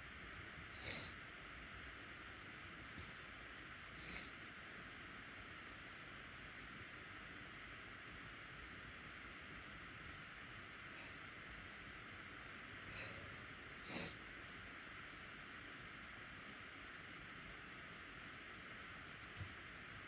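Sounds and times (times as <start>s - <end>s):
steady background hiss: 0.0s - 20.0s
person sniffing: 0.8s - 1.2s.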